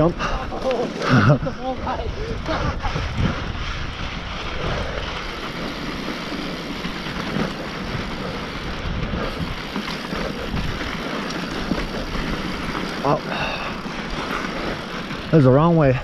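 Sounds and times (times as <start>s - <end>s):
mountain bike rattling on dirt: 0.0s - 16.0s
wind buffeting microphone: 0.0s - 16.0s.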